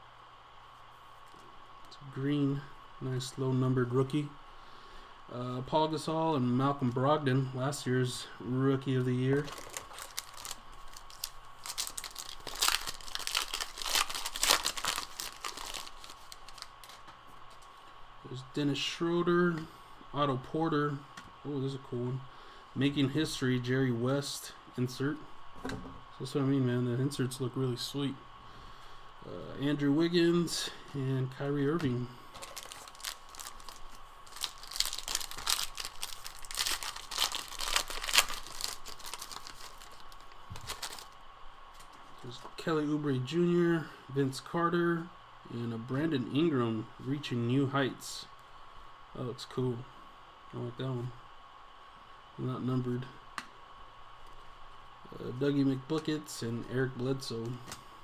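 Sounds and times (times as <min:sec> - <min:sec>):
plastic wrapper crinkling and tearing: 0:09.3 - 0:17.1, 0:31.8 - 0:41.2.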